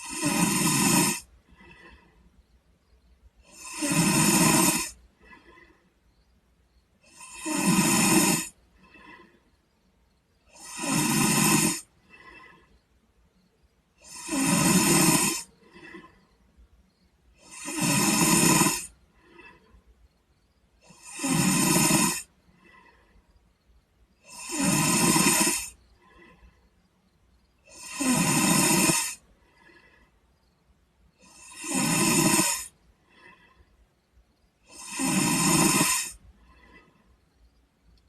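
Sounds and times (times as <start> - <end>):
boy snoring: 0.0 - 2.2, 3.4 - 5.9, 7.0 - 9.5, 10.4 - 12.8, 13.9 - 16.3, 17.3 - 19.8, 20.8 - 23.2, 24.2 - 26.6, 27.6 - 30.1, 31.2 - 33.7, 34.6 - 37.1.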